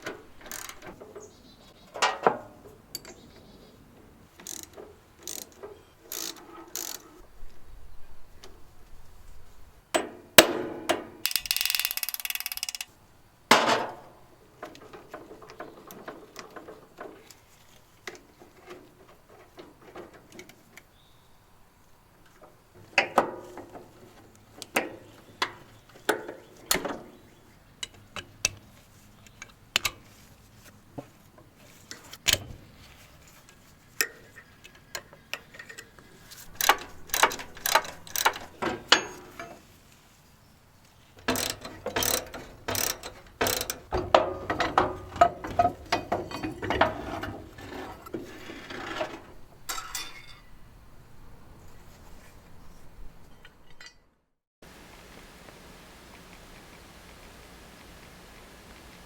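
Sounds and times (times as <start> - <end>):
hand tools clicking on metal: 0.0 - 1.3, 4.4 - 7.1, 11.2 - 13.0, 34.0 - 39.6, 41.2 - 48.0.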